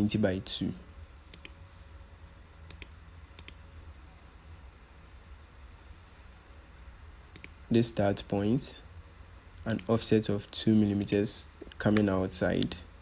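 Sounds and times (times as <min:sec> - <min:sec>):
faint background hum: 0:00.0 - 0:13.0
computer mouse clicking: 0:01.3 - 0:01.6, 0:02.6 - 0:03.6, 0:07.2 - 0:07.6, 0:09.7 - 0:10.0, 0:10.9 - 0:12.7.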